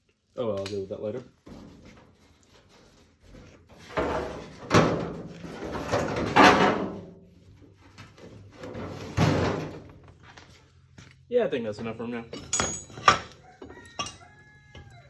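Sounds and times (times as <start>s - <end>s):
hard objects scraping and clattering: 1.5s - 10.7s.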